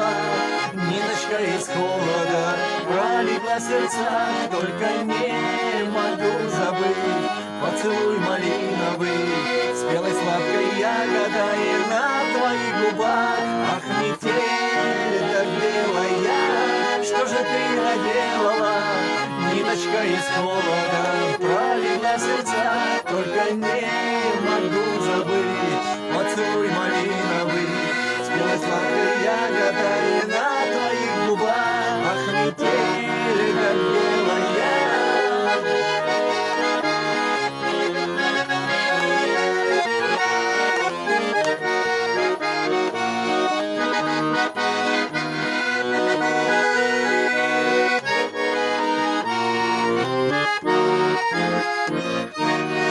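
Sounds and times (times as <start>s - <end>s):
accordion playing pop song: 0.0s - 52.9s.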